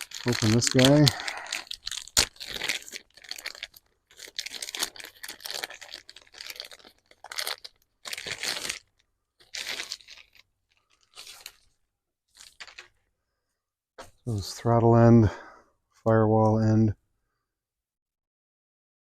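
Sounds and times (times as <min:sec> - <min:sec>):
packaging tearing and crinkling: 0:00.0 - 0:13.0.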